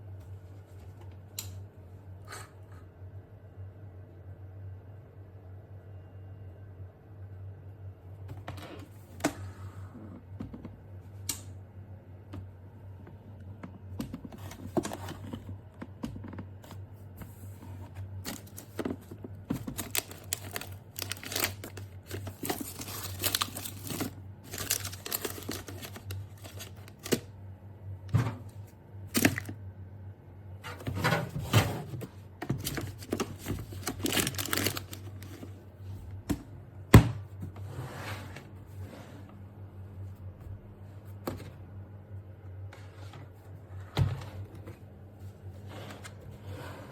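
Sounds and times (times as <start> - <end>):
steady low hum: 0.0 - 46.9
plastic and paper crinkling: 16.6 - 27.3, 29.1 - 29.6, 32.4 - 35.6.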